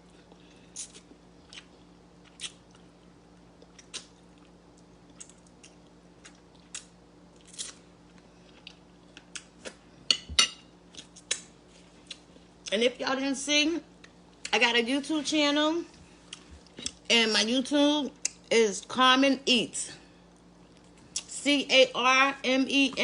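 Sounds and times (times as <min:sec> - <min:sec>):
person chewing: 0:00.0 - 0:09.9, 0:10.8 - 0:12.7, 0:16.2 - 0:17.1.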